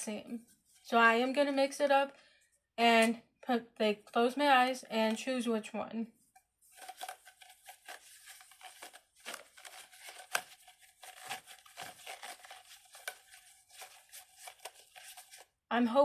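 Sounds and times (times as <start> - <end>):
plastic packaging rustling: 6.7 - 15.6.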